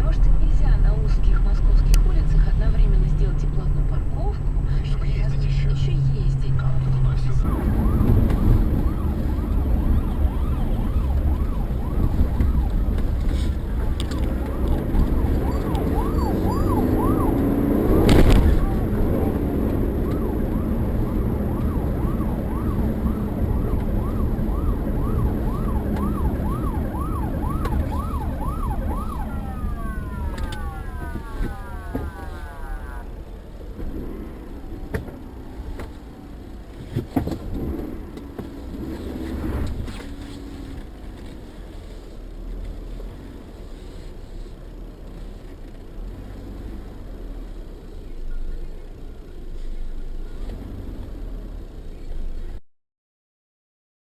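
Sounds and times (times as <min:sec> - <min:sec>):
road and engine noise: 0:00.0 - 0:52.6
emergency siren yelping: 0:07.4 - 0:33.8.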